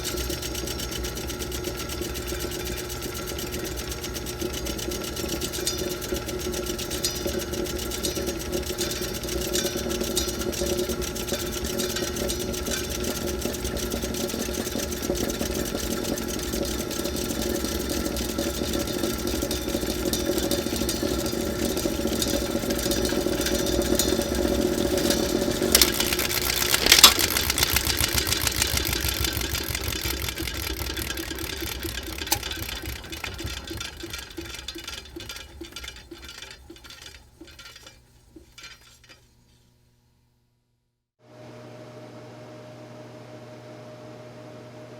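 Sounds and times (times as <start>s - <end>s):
film projector clatter: 0.0s - 39.2s
sharp clicks: 25.8s - 33.5s.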